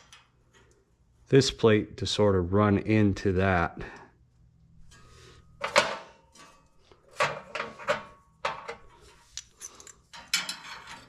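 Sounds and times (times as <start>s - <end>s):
metal parts knocking and clanking: 7.2s - 11.0s.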